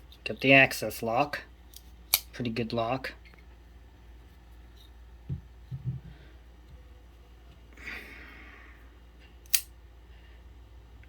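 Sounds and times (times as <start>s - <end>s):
soft low bumps on table: 5.2s - 6.2s
breathy exhale: 7.8s - 8.9s
sharp knife click: 9.5s - 9.7s.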